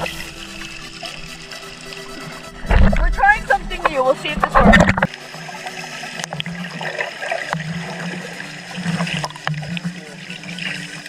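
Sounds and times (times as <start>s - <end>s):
low hum: 0.0s - 5.2s
water sloshing and gurgling: 0.0s - 11.0s.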